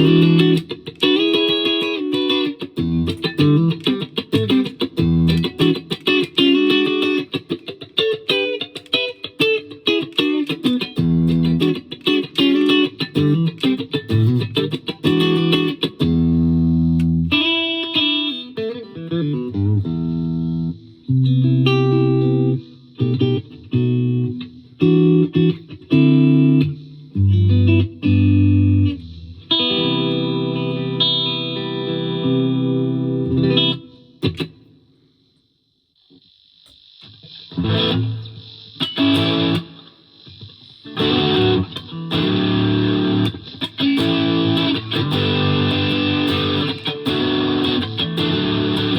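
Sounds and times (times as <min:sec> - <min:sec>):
distorted electric guitar chords: 0:00.0 - 0:34.7, 0:36.5 - 0:48.9
clean electric guitar: 0:00.0 - 0:34.8, 0:36.1 - 0:48.9
amp hiss: 0:33.7 - 0:48.9.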